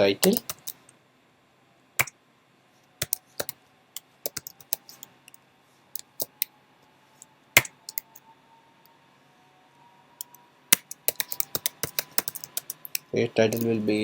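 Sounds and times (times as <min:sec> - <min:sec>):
keyboard keystroke clicks: 0:00.2 - 0:00.8, 0:03.0 - 0:04.8, 0:10.8 - 0:13.7.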